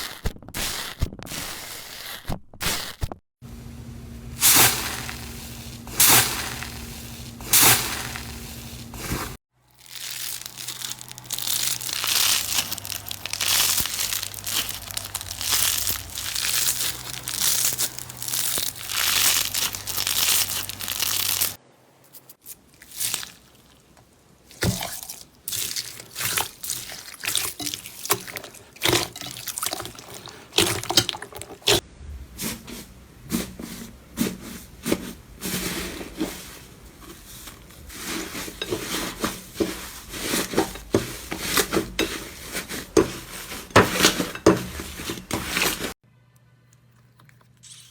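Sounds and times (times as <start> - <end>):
slime crackling and popping: 8.9 - 21.6, 22.8 - 23.8.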